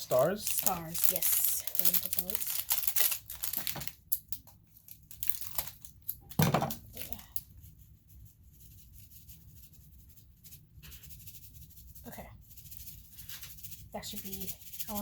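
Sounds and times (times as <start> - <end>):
plastic packaging crinkling: 0.0 - 6.3.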